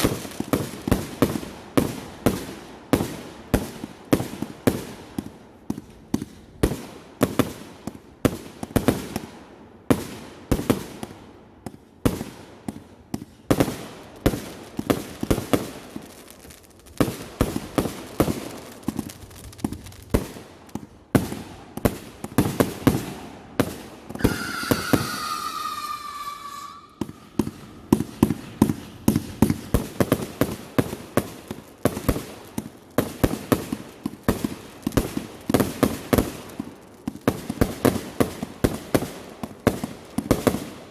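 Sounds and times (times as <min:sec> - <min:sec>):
fireworks bangs: 0:12.1 - 0:40.7
whistling firework: 0:22.4 - 0:30.2.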